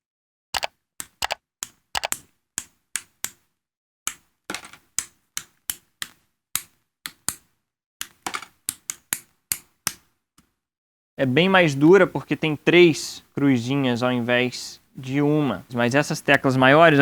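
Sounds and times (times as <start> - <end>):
keycaps clicking off switches: 0.6 - 1.4, 2.0 - 2.2.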